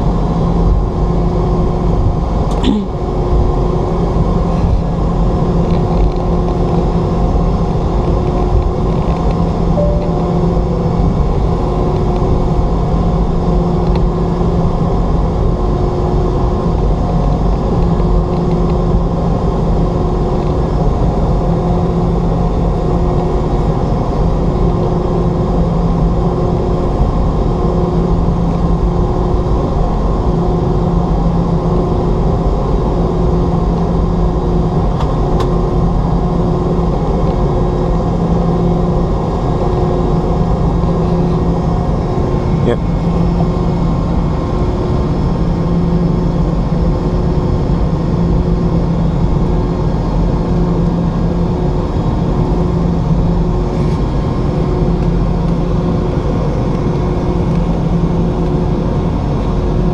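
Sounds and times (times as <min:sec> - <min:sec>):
steady hums: 0:02.3 - 0:13.7
wavering hum: 0:09.0 - 0:12.9.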